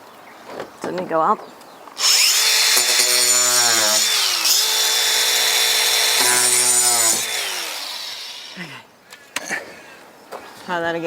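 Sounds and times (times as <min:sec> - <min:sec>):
power saw cutting wood: 0:02.0 - 0:08.7.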